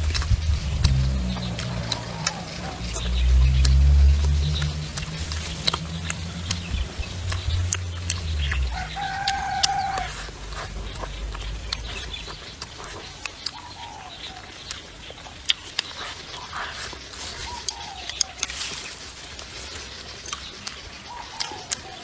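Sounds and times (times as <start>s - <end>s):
sharp little clicks: 0.0s - 13.8s
low vehicle rumble: 0.0s - 21.8s
rooster crowing: 8.6s - 10.8s.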